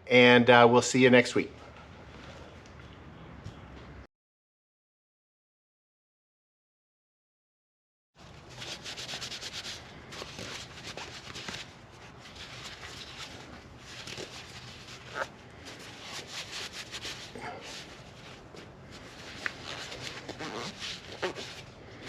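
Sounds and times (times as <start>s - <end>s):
hand scrubbing strokes: 8.2s - 22.0s.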